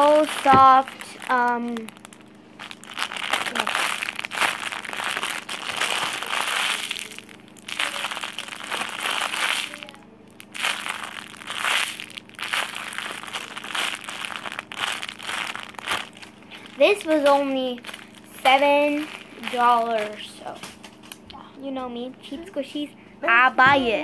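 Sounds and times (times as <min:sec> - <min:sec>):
plastic packaging crinkling: 0:00.0 - 0:21.2.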